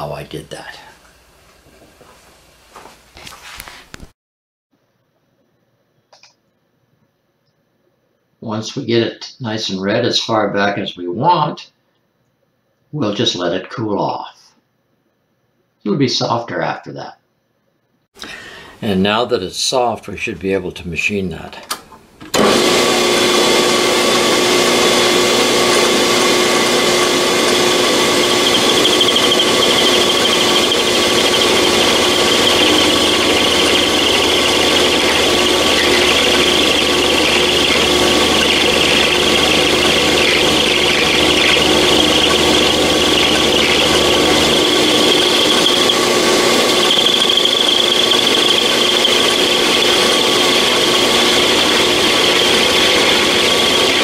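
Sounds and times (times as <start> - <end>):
high scraping of metal cutting: 22.4 - 54.0
lathe machine hum: 22.4 - 54.0.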